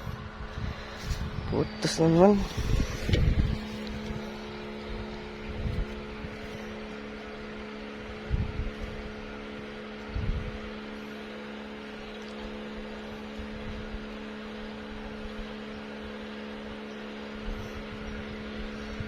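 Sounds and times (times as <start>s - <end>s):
motor humming: 0.0s - 19.0s
dull low thumps: 2.4s - 6.4s.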